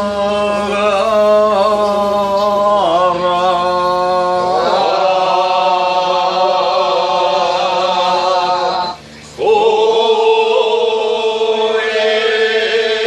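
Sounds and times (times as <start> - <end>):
men singing a work chant: 0.0 - 13.0.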